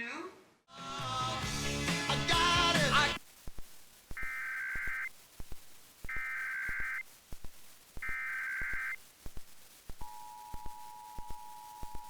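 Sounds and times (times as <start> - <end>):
faint irregular clicks: 3.2 - 12.0
warbling data bursts: 4.1 - 12.0.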